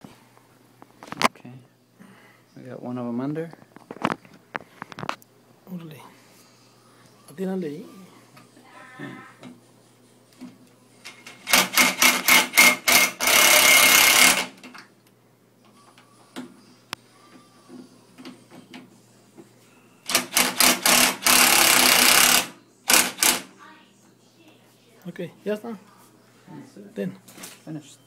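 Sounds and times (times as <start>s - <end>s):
power drill driving screws: 11.5s - 14.6s, 20.1s - 23.4s.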